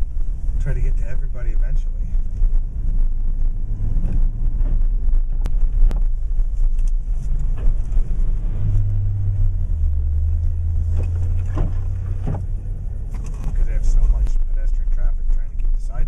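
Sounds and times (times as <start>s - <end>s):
vehicle engine rumbling: 0.0s - 16.0s.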